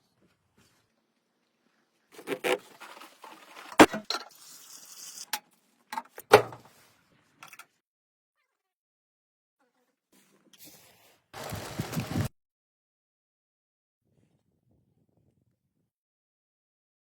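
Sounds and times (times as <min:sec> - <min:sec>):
rubbing or scraping: 0:02.1 - 0:05.3.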